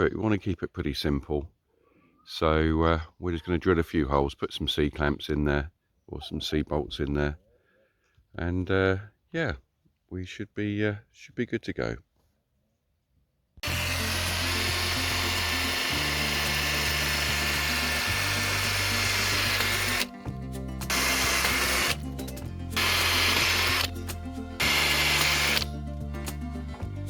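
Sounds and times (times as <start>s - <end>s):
power drill boring: 13.6s - 25.7s
background music with bass: 13.6s - 27.0s.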